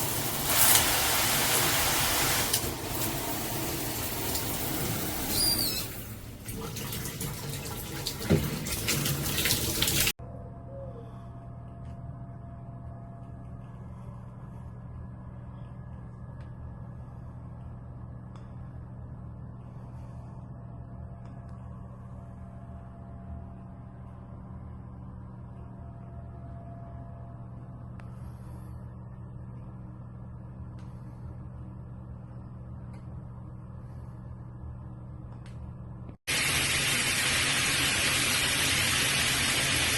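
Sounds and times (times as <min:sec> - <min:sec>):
shower spraying water: 0:00.0 - 0:10.2, 0:36.3 - 0:39.9
low hum: 0:10.2 - 0:39.1.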